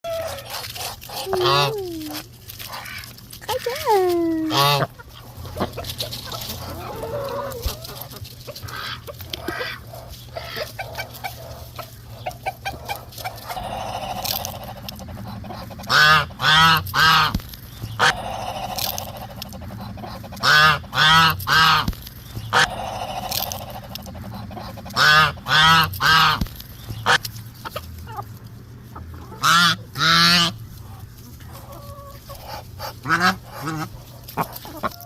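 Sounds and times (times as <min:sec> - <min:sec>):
ducks calling loudly: 0:00.1 - 0:35.0.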